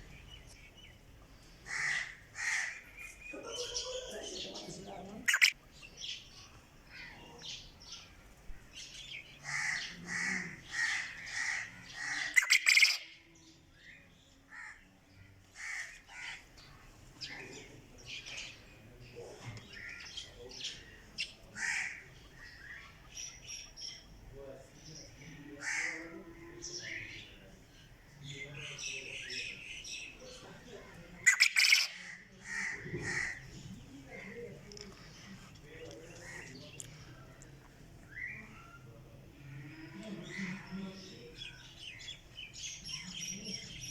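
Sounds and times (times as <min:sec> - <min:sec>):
quail calling: 0:05.2 - 0:05.7, 0:09.4 - 0:13.1, 0:31.2 - 0:33.5.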